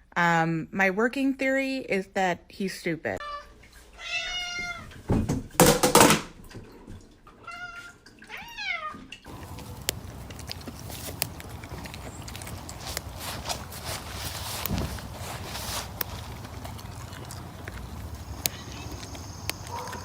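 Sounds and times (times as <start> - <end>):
cat meowing: 3.2 - 4.9, 7.4 - 10.2
faint clicks: 9.3 - 20.0
steady hiss: 9.3 - 20.0.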